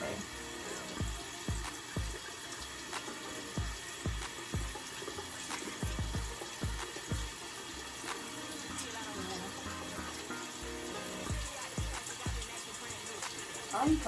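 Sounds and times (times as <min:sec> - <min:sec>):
background music: 0:00.0 - 0:14.0
tap water running into sink: 0:00.0 - 0:14.0
bass drum thumps: 0:01.0 - 0:02.2, 0:03.6 - 0:04.8, 0:05.8 - 0:07.3, 0:11.3 - 0:12.5.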